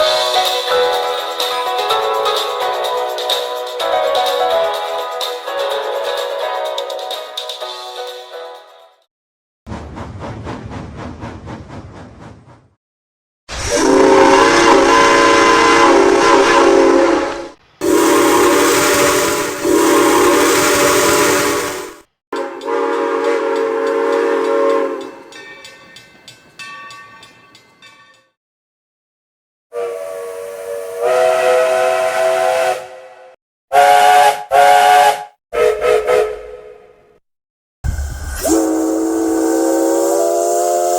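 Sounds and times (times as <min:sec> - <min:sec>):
steam whistle blasts: 0:13.5 - 0:25.2, 0:29.7 - 0:36.8, 0:37.9 - 0:40.9
hissing steam: 0:17.8 - 0:22.1, 0:37.9 - 0:40.9.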